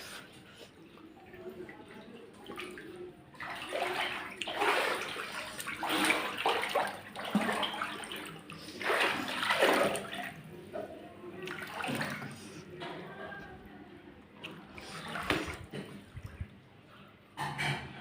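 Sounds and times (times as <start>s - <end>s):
floodwater splashing and sloshing: 1.1s - 12.9s, 14.4s - 16.8s.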